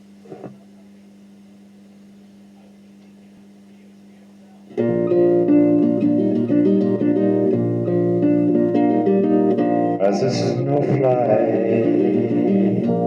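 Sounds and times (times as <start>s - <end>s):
faint low hum: 0.0s - 13.0s
guitar picking notes and chords: 4.7s - 13.0s.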